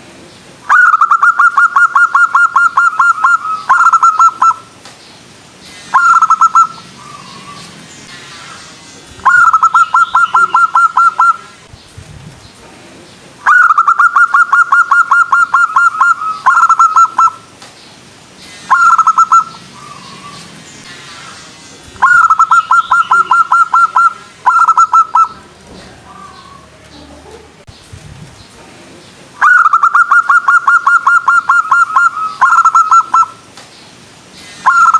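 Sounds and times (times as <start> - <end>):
dove cooing: 0.7 - 4.6, 9.2 - 11.5, 13.5 - 17.4, 22.0 - 27.6, 29.4 - 33.3.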